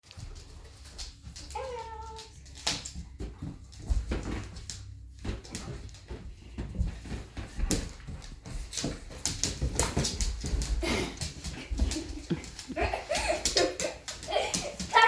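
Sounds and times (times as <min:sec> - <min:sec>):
taps knocks and scuffles: 0:02.8 - 0:12.2.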